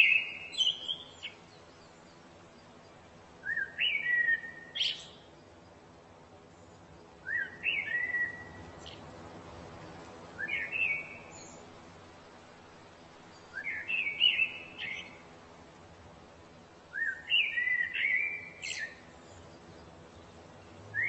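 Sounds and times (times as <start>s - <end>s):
songbird warbling: 0.0s - 5.8s, 6.7s - 9.0s, 9.7s - 11.7s, 12.9s - 15.3s, 16.9s - 21.0s.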